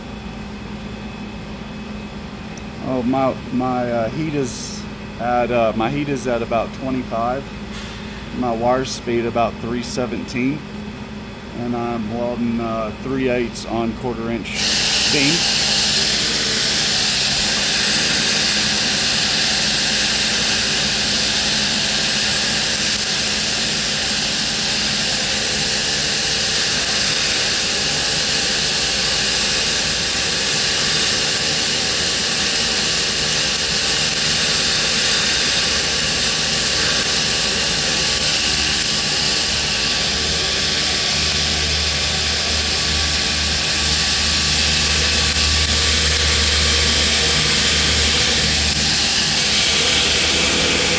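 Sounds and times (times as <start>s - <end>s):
welding arc hissing: 2.8s - 10.3s, 11.6s - 50.9s
low hum: 39.4s - 50.9s.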